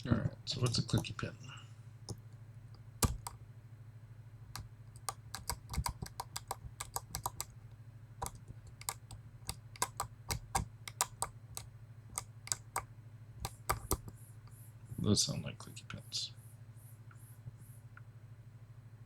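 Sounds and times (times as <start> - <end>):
lock pins clicking: 3.0 - 3.4, 4.5 - 7.5, 8.2 - 14.1.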